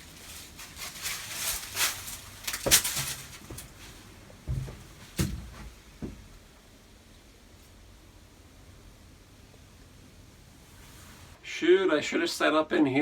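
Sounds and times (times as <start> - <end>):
wooden door knocks and thumps: 4.5 - 6.2.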